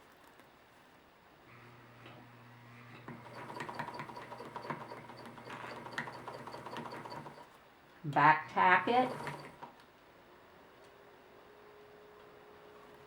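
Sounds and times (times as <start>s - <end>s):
sewing machine stitching: 3.0s - 7.5s, 8.6s - 9.7s.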